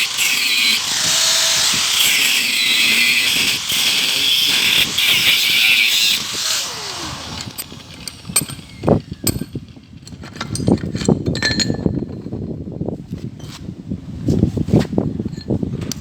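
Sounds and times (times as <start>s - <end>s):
power tool winding down: 0.0s - 9.6s.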